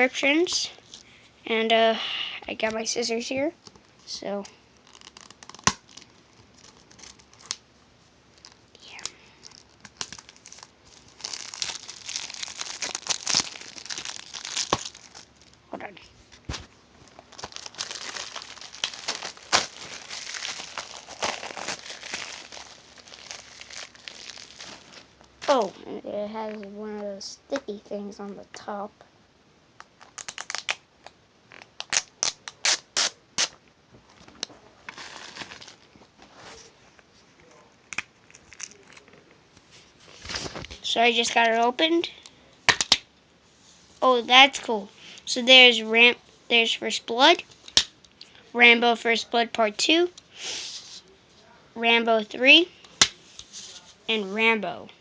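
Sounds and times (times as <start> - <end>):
shrink-wrap crinkling and tearing: 4.6 - 7.6, 8.3 - 15.7, 16.4 - 25.7, 29.8 - 33.6, 34.2 - 35.9, 37.8 - 39.2.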